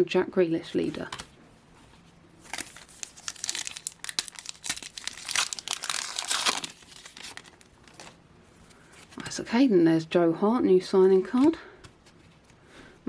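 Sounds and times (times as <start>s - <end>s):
wrapper tearing and crinkling: 2.4s - 8.2s.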